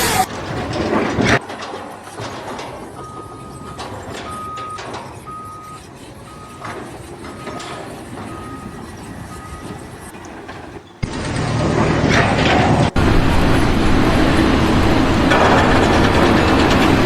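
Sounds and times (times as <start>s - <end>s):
loud rough noise: 0.0s - 2.7s, 11.0s - 17.0s
construction site noise: 0.0s - 17.0s
engine rumble: 0.0s - 17.0s
reversing alarm beeping: 2.5s - 10.2s.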